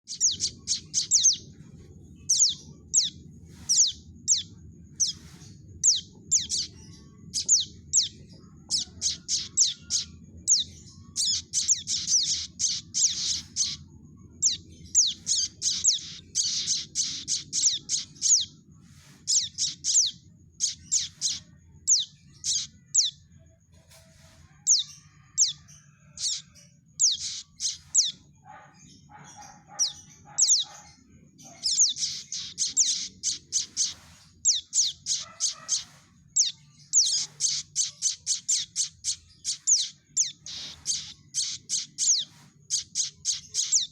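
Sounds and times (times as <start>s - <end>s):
faint low hum: 0.1s - 43.7s.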